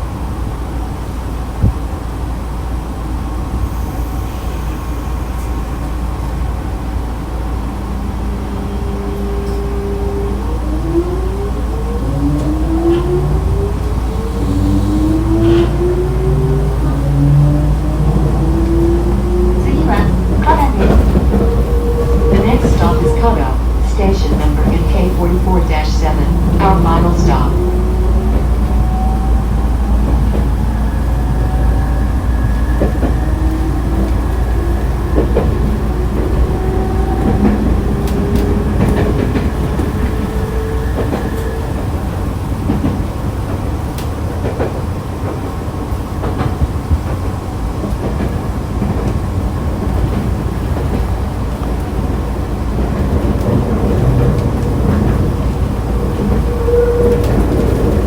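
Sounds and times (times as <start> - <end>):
train wheels rumbling on rail: 0.0 - 58.0
rail-joint clicks: 12.4 - 16.2, 19.5 - 30.9, 32.6 - 58.0.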